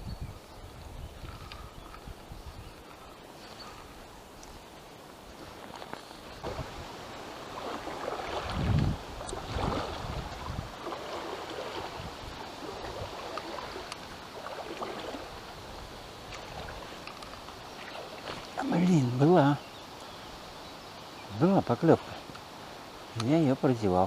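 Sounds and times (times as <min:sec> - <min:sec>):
wind buffeting microphone: 0:00.0 - 0:04.1, 0:06.3 - 0:17.0
river water rushing: 0:02.9 - 0:21.2.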